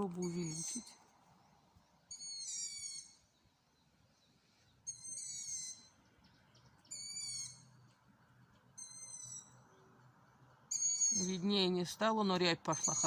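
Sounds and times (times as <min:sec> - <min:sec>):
owl chicks begging calls: 0:00.0 - 0:00.9, 0:02.1 - 0:03.3, 0:04.8 - 0:07.7, 0:08.8 - 0:09.6, 0:10.7 - 0:11.6, 0:12.7 - 0:13.0.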